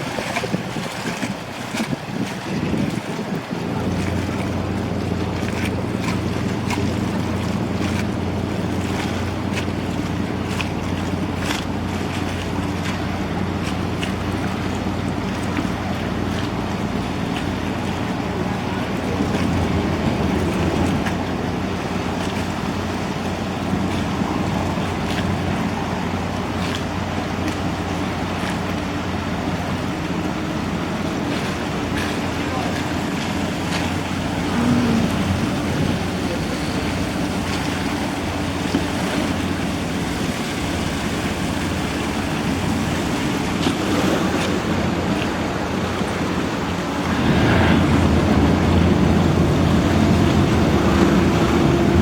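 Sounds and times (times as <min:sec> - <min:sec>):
wind noise: 0:00.0 - 0:04.3, 0:46.7 - 0:52.0
boat engine humming: 0:00.0 - 0:52.0
water washing: 0:00.0 - 0:52.0
wind buffeting microphone: 0:00.0 - 0:52.0.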